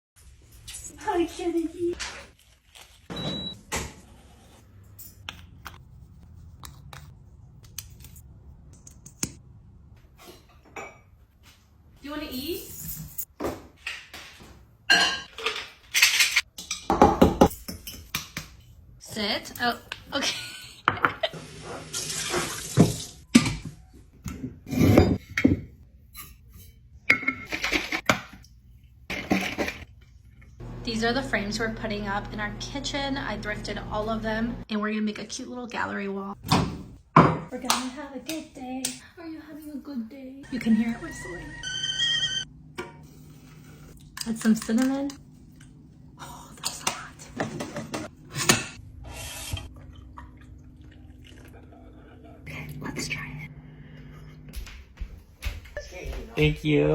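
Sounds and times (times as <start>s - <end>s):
kitchen items clinking and clattering: 12.3s - 18.8s, 19.5s - 30.6s, 40.5s - 45.7s, 46.7s - 48.8s
low steady hum: 49.7s - 54.7s.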